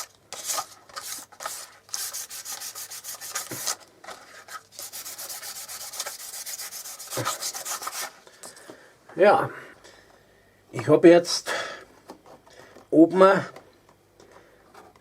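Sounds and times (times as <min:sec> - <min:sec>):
sandpaper rubbing leather: 0:00.0 - 0:03.8, 0:04.5 - 0:08.2.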